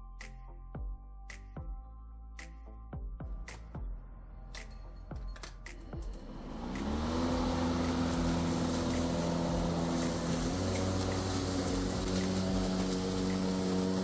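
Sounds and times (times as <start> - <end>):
electric lawn mower humming: 6.1 - 14.0.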